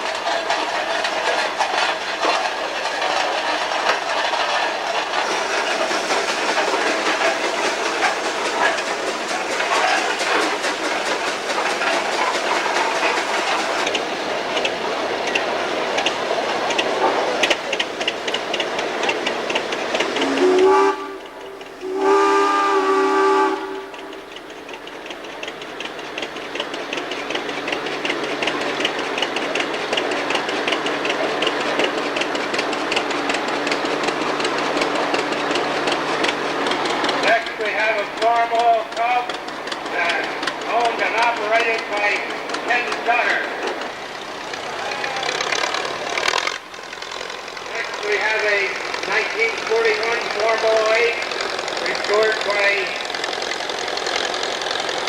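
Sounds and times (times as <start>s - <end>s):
steam traction engine running: 0.0s - 55.0s
steam whistle blowing: 20.2s - 24.2s.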